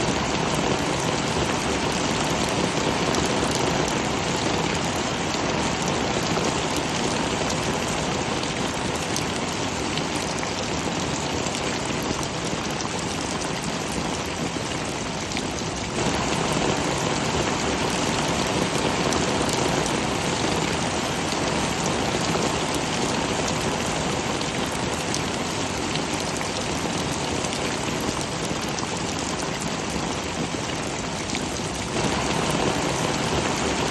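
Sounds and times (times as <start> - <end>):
heavy rain falling: 0.0 - 33.9.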